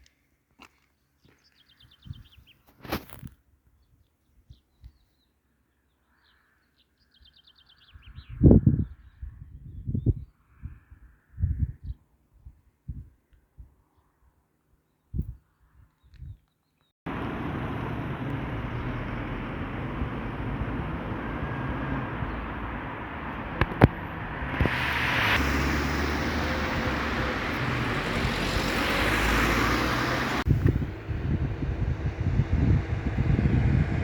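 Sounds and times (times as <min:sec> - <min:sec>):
low rumble: 0:17.1 - 0:34.0
steady outdoor noise: 0:17.1 - 0:34.0.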